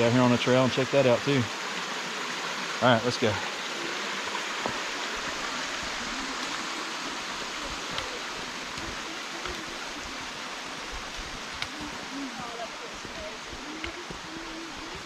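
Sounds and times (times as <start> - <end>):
mountain stream rushing: 0.0 - 15.0.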